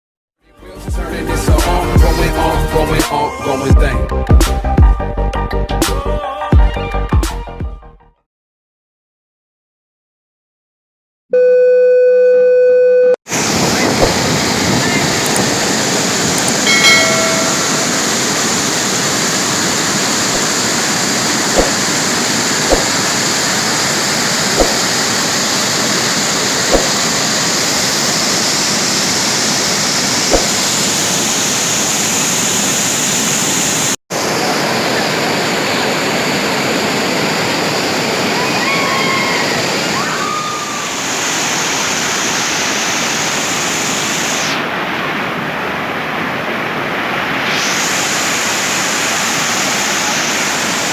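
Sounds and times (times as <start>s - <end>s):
waterfall roaring: 13.3s - 50.9s
steady electronic tone: 16.7s - 18.7s.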